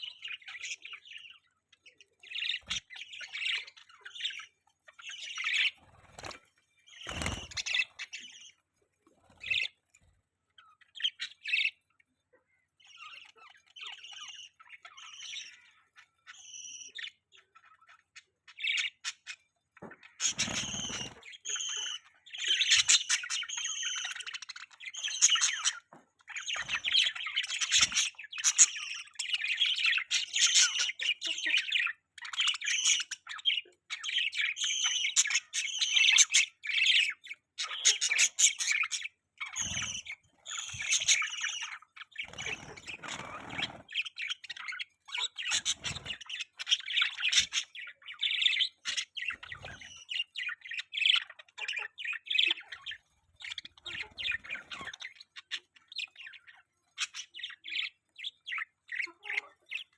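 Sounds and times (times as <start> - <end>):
budgerigars chirping: 0.0 - 9.8, 10.4 - 59.9.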